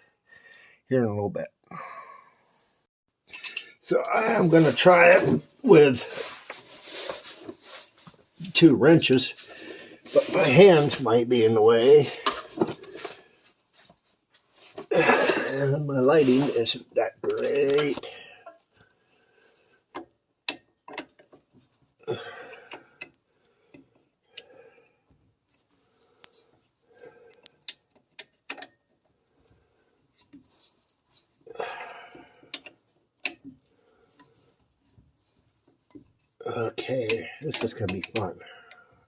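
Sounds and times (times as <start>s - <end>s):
wrenches clinking on metal: 3.3s - 5.8s, 15.0s - 18.6s, 27.4s - 29.0s, 35.9s - 38.4s.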